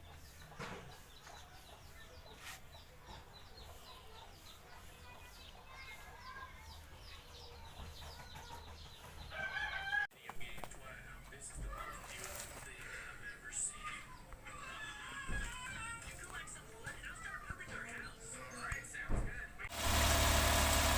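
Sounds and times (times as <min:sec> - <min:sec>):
chickens clucking: 0:00.0 - 0:09.9.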